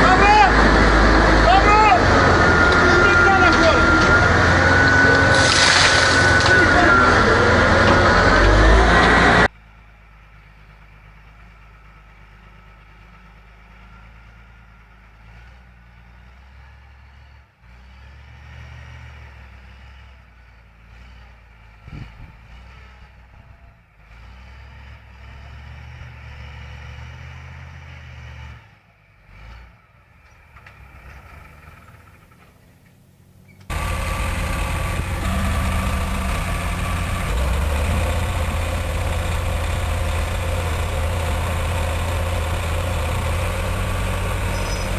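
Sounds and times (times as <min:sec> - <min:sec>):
heavy engine idling: 0:00.0 - 0:18.0, 0:28.9 - 0:44.9
diesel engine running: 0:00.0 - 0:18.4, 0:19.6 - 0:44.9.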